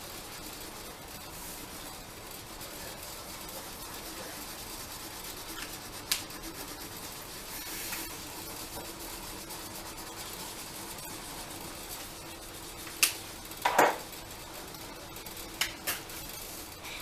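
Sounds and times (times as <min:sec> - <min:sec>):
markers scratching on paper: 0:03.6 - 0:10.8.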